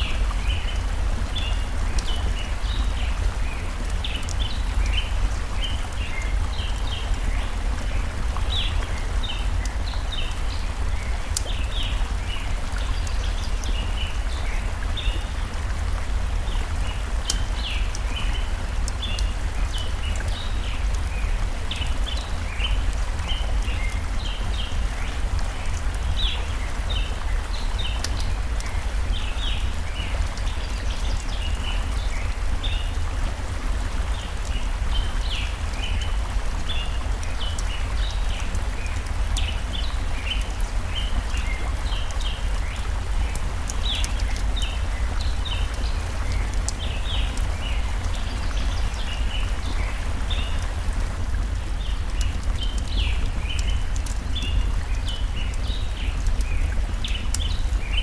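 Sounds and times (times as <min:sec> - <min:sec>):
small birds chirping: 0:00.0 - 0:58.0
stream rushing: 0:00.0 - 0:58.0
campfire crackling and popping: 0:11.3 - 0:12.0, 0:28.0 - 0:31.7, 0:37.2 - 0:58.0.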